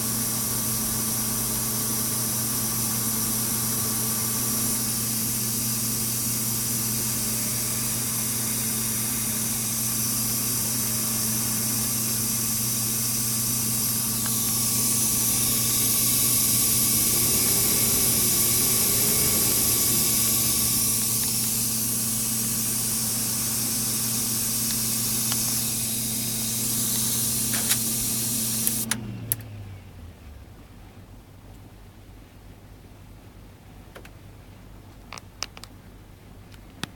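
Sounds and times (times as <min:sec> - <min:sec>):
computer hum: 0:00.8 - 0:30.6
electronic hiss: 0:02.3 - 0:28.9.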